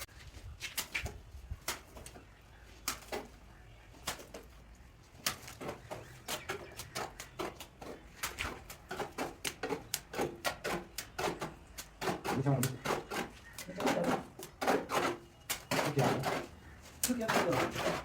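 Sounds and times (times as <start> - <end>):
sharp taps and clicks: 6.7 - 13.8.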